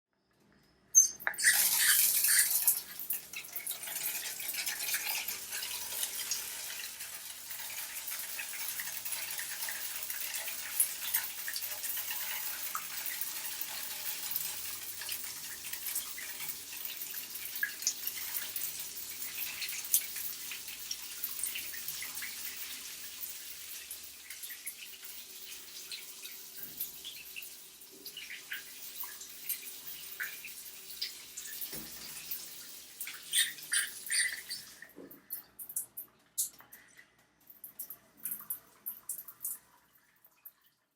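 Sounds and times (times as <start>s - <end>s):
water drips and splashes: 1.2s - 40.9s
shower spray of water: 1.3s - 3.1s, 28.1s - 34.8s.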